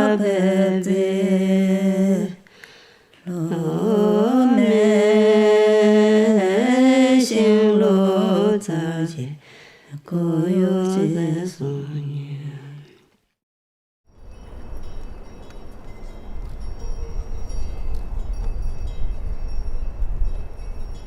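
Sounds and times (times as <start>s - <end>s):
person singing chant-like melody: 0.0s - 2.4s, 3.2s - 13.0s.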